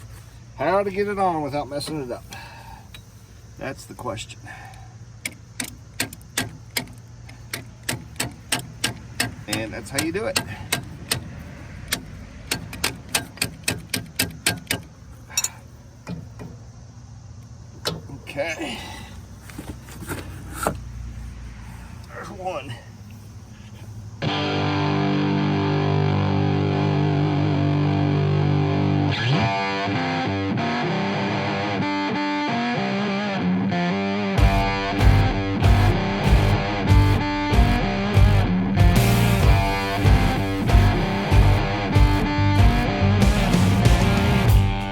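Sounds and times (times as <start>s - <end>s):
sharp metallic clicks: 5.2s - 16.7s
distorted electric guitar: 24.2s - 44.9s
drums and bass: 34.4s - 44.9s.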